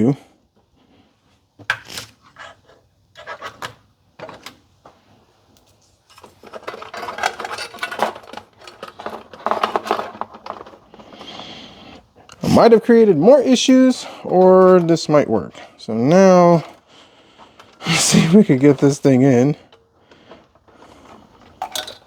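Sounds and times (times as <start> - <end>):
cables scraping and rattling: 6.1 - 11.5.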